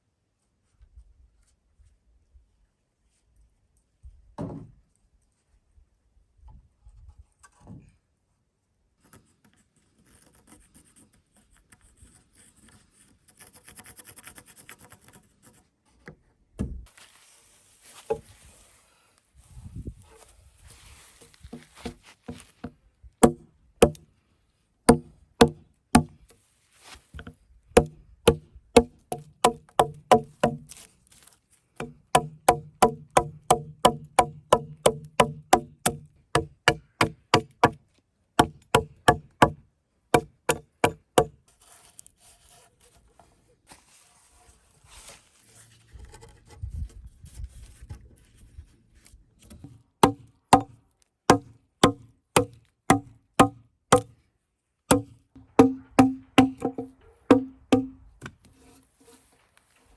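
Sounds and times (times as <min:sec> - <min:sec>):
hand tool knocking on wood: 0:21.8 - 0:24.0, 0:24.9 - 0:26.1, 0:27.8 - 0:30.6, 0:31.8 - 0:37.8, 0:38.4 - 0:39.6, 0:40.2 - 0:41.4, 0:51.3 - 0:54.1, 0:54.9 - 0:58.0.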